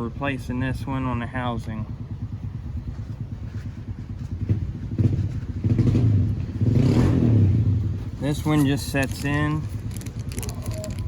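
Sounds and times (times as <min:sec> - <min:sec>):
engine low rumble: 0:00.0 - 0:11.0.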